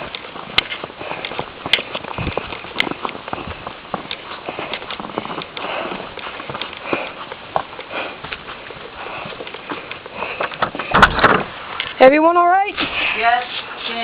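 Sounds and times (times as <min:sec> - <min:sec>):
footsteps crunching through snow: 0:00.0 - 0:14.0
person breathing: 0:00.7 - 0:10.9, 0:12.8 - 0:13.7.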